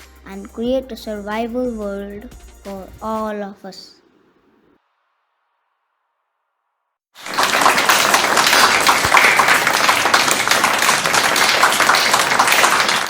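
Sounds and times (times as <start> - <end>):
crowd applauding: 7.2 - 13.0.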